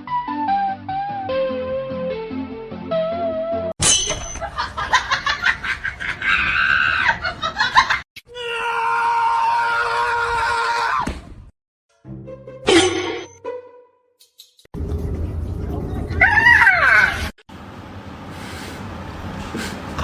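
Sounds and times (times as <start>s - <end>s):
person screaming: 8.3s - 11.1s.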